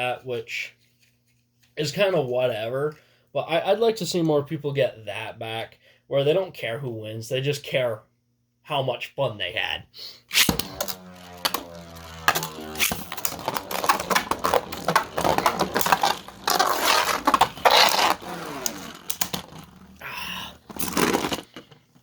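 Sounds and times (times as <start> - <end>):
spinning tops scraping: 10.3 - 21.5
whirring whine: 10.4 - 20.1.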